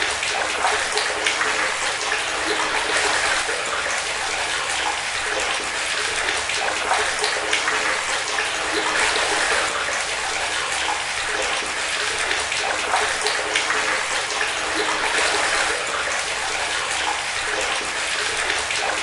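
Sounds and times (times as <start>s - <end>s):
tap water pouring into bathtub: 0.0s - 19.0s.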